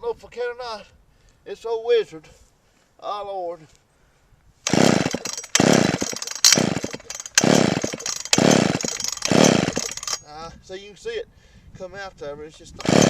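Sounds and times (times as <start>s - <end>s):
chainsaw engine cranking: 4.6s - 10.3s, 12.5s - 13.0s
chainsaw starter cord pulls: 4.6s - 10.3s, 12.5s - 13.0s.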